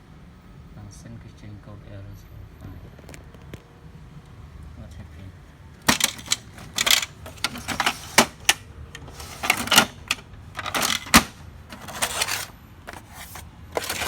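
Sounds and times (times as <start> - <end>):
plastic clicks and rattles at printer: 5.9 - 14.0.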